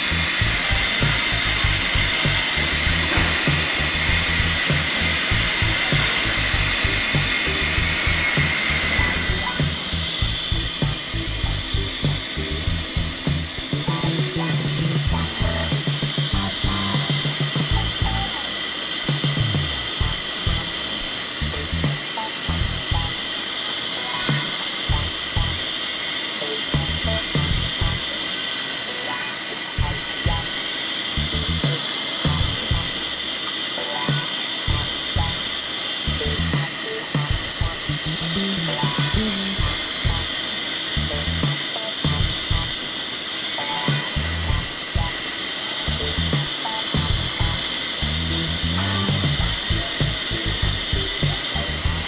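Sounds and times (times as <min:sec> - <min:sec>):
background music with thudding bass: 0:00.0 - 0:18.3, 0:19.1 - 0:23.2, 0:24.9 - 0:25.6, 0:26.8 - 0:28.1, 0:29.8 - 0:30.6, 0:31.2 - 0:33.0, 0:34.7 - 0:35.4, 0:36.1 - 0:40.4, 0:41.0 - 0:42.8, 0:43.9 - 0:45.2, 0:45.9 - 0:52.0
machine spindle whining: 0:00.0 - 0:52.0.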